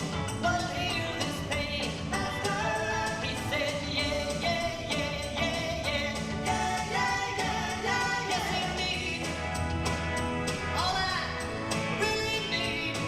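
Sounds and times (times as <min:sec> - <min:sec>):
person singing: 0:00.0 - 0:09.4, 0:12.0 - 0:13.0
instrumental accompaniment: 0:00.0 - 0:13.0.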